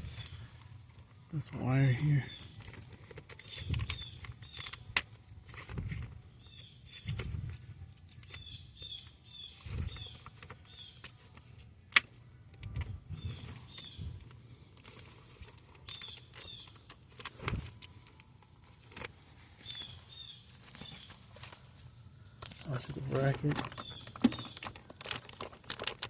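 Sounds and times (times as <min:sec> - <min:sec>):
clicks and knocks of wiring work: 0:22.4 - 0:26.0.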